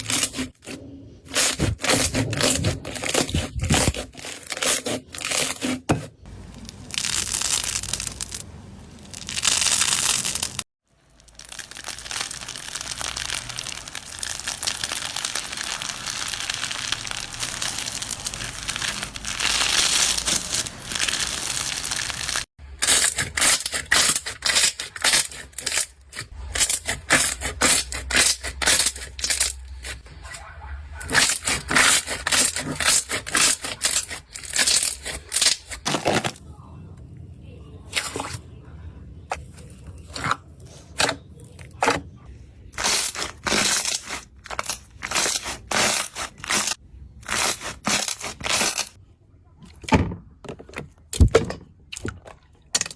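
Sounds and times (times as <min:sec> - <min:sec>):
slime squeezed by hand crackling: 0:06.6 - 0:10.6.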